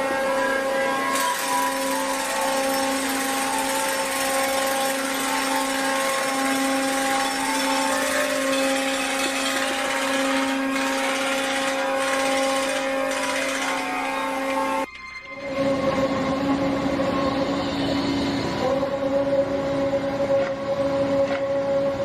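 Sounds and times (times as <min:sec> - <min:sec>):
low droning hum: 0:05.1 - 0:22.0.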